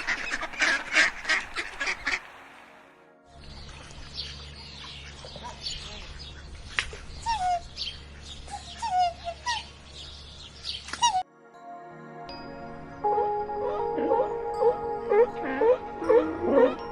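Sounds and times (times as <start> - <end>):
birds chirping and calling: 4.6 - 11.2.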